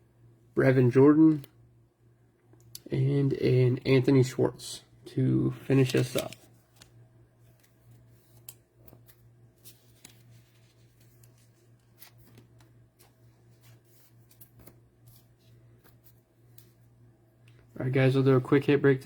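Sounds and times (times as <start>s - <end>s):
low steady hum: 0.0s - 19.0s
trading cards rustling and clicking: 5.5s - 16.9s.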